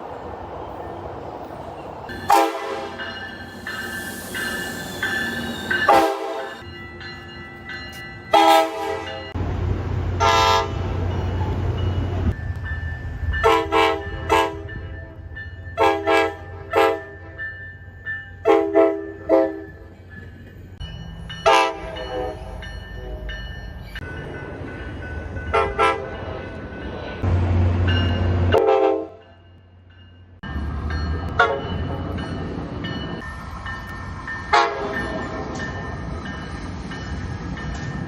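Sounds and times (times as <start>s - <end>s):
low train rumble: 0.0s - 38.0s
train horn short blasts: 2.1s - 3.0s, 5.9s - 6.6s, 8.3s - 9.2s, 10.2s - 10.8s, 13.4s - 14.6s, 15.8s - 17.4s, 18.4s - 19.6s, 28.6s - 29.2s.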